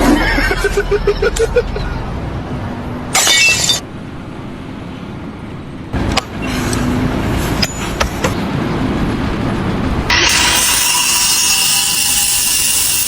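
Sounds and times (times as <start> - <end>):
vehicle rumble: 0.0 - 10.8
loud burst of noise: 10.1 - 13.0.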